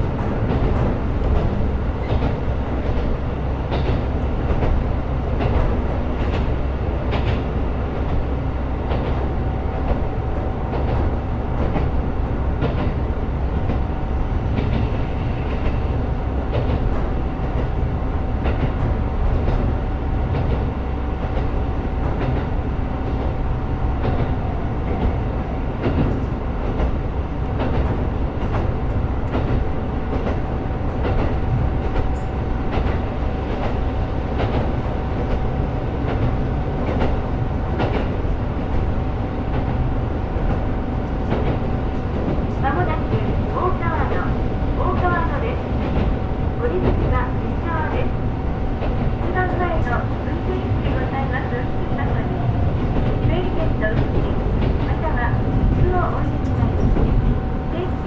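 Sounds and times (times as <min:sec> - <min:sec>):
train engine and wheels rumbling: 0:00.0 - 0:58.0.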